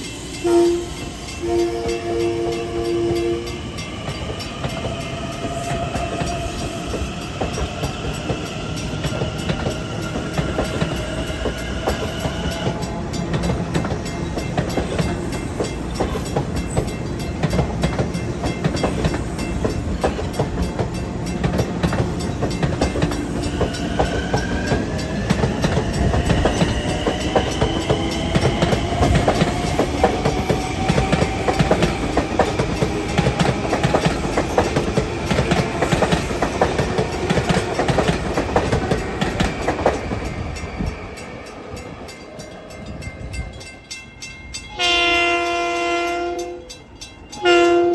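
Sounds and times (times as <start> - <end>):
train wheels clattering over rail joints: 4.0 - 43.4.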